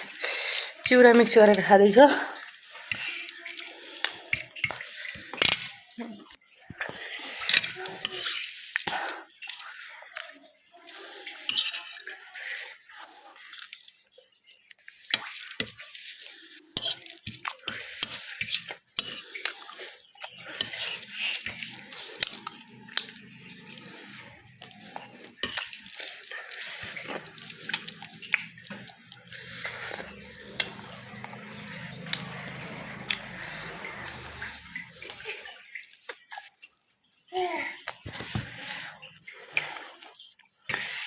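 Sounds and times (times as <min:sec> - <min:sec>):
cutlery clinking against a dish: 0:11.5 - 0:12.0.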